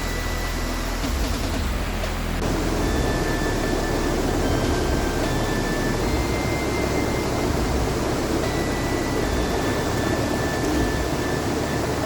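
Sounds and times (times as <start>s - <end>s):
mountain brook rushing: 2.4s - 12.0s.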